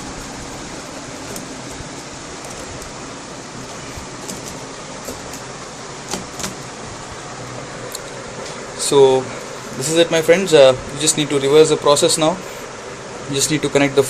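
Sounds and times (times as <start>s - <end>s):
steady background hiss: 0.0s - 14.0s.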